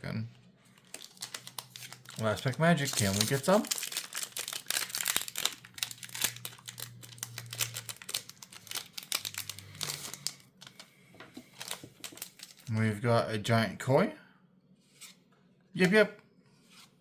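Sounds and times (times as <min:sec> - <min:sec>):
foil wrapper tearing and crinkling: 0:00.8 - 0:10.8, 0:11.5 - 0:12.7.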